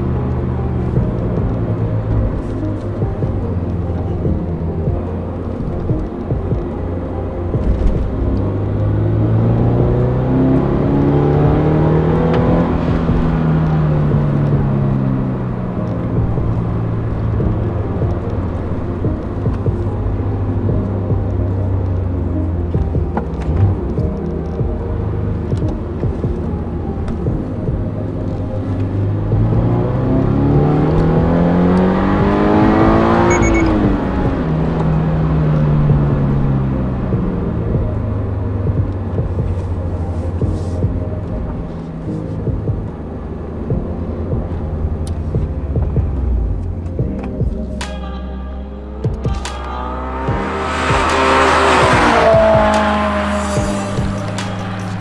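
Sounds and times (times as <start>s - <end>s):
car engine revving and idling: 0.0s - 55.0s
short high beeps: 33.3s - 33.8s.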